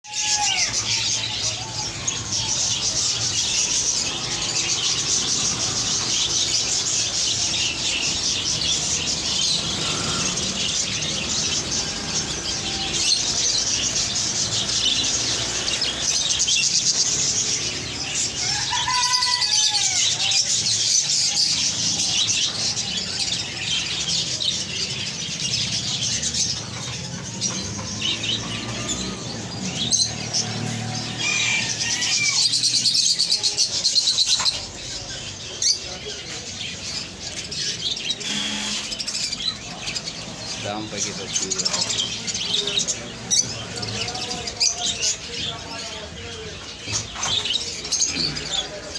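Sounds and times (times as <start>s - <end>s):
parrots chirping and chattering: 0.1s - 48.9s
parrot gliding calls: 38.2s - 39.2s.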